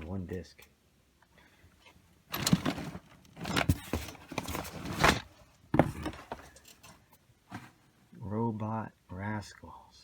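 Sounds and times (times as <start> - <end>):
rustling and knocking of boxes: 2.3 - 8.0.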